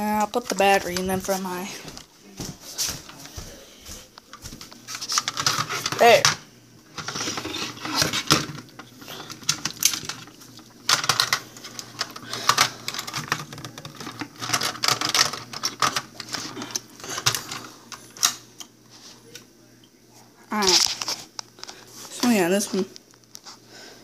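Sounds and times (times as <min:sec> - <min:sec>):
plastic cases clicking and knocking: 0:07.0 - 0:17.6.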